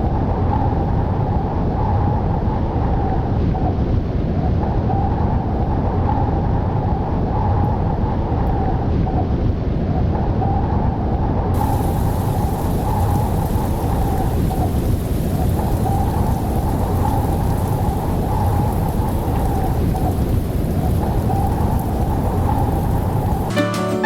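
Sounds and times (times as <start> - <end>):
deep rumble: 0.0 - 23.5
storm wind: 0.0 - 23.5
heavy rain: 11.6 - 24.0.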